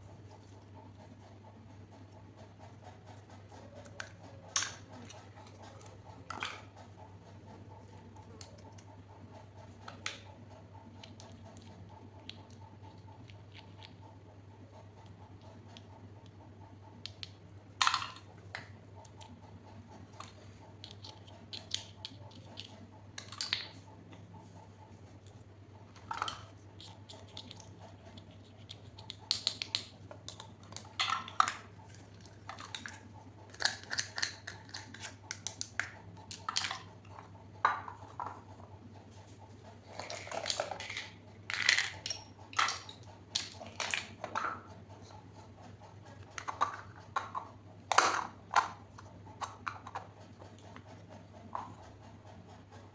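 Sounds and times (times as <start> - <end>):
plastic toy pieces clicking: 20.2 - 23.8, 26.0 - 36.9, 40.0 - 44.5.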